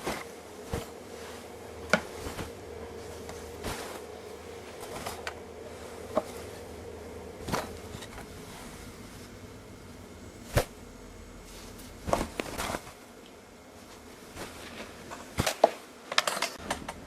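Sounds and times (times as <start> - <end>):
hair swishing against a chair: 0.0 - 9.4.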